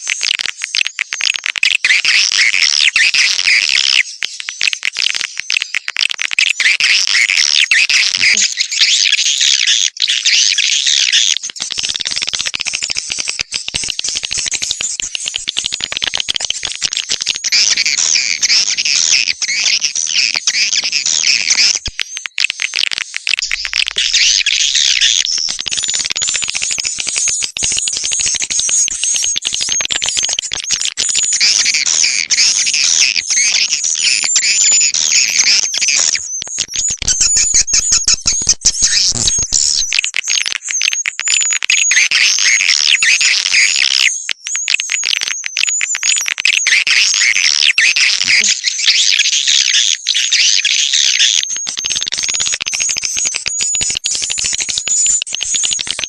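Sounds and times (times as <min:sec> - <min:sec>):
swiftlets twittering: 0:22.6 - 0:47.2, 0:51.0 - 0:56.0.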